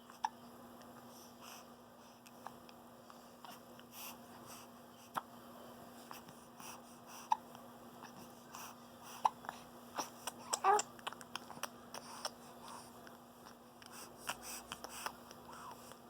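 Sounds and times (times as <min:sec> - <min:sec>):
soft breathing: 0:00.1 - 0:16.0
baby hiccuping: 0:10.0 - 0:11.0.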